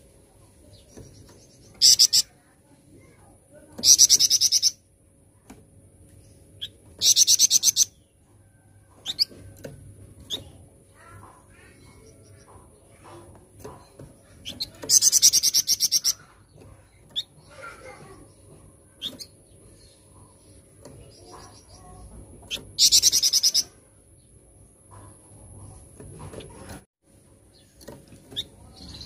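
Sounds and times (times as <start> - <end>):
songbird singing: 3.5 - 4.9, 6.1 - 25.8.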